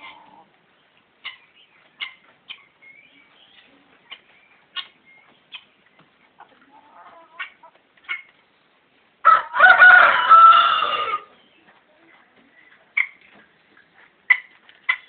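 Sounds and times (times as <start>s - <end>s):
rooster crowing: 9.2s - 11.3s.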